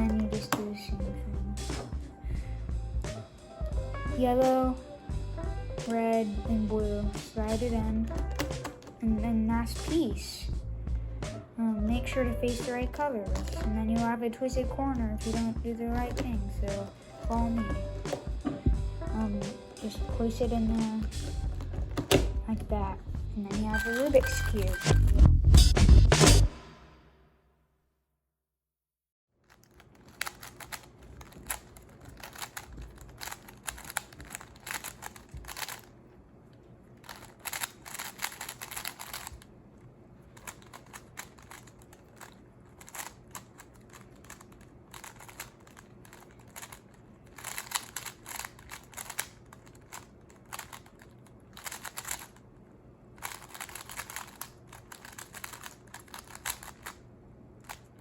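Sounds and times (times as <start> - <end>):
puzzle cube clicking as twisted: 29.5 - 35.9, 37.0 - 39.5, 40.3 - 52.4, 53.2 - 57.0.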